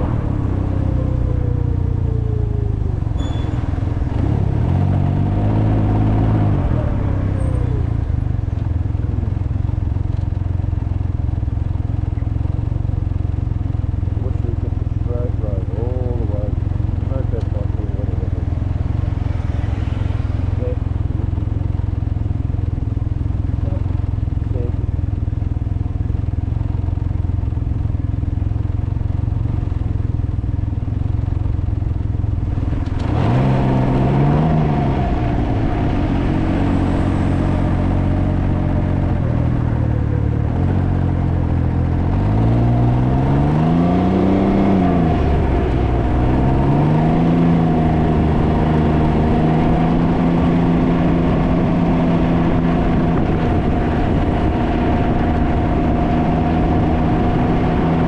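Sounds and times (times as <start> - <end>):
motorcycle engine revving: 0.0 - 58.0
wind buffeting microphone: 51.4 - 58.0.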